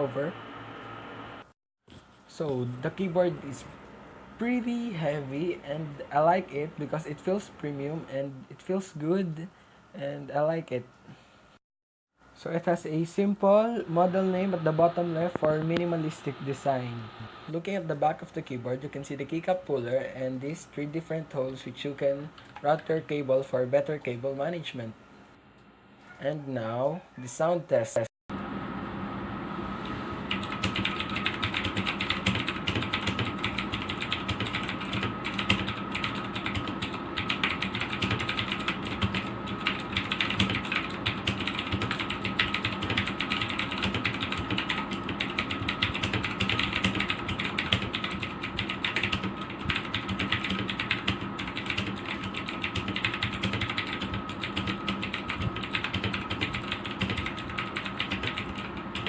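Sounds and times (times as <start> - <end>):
mechanical keyboard typing clicks: 30.4 - 59.0.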